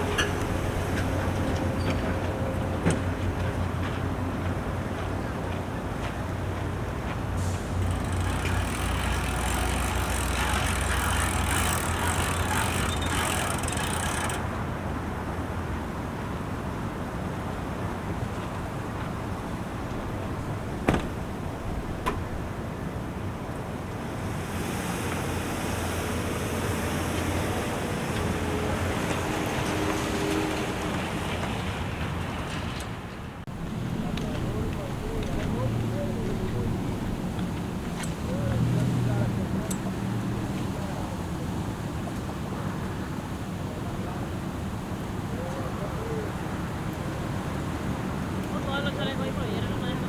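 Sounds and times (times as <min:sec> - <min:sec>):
low engine rumble: 0:00.0 - 0:15.6, 0:19.0 - 0:42.1
rushing hiss: 0:24.1 - 0:29.9.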